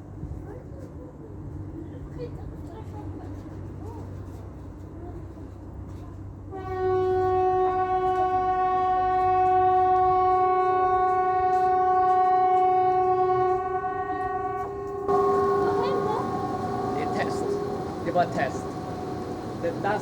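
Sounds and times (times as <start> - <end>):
long air horn blast: 6.5 - 20.0.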